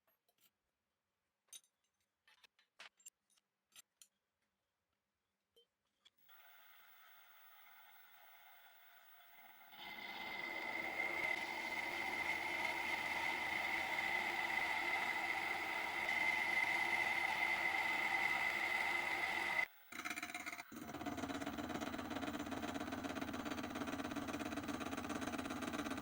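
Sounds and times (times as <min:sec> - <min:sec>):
workshop machine whining: 0:06.4 - 0:26.0.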